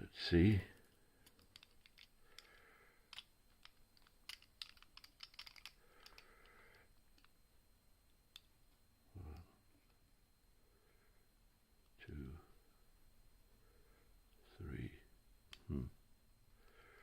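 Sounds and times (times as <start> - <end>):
lock picking clicks and scraping: 1.2 - 7.4.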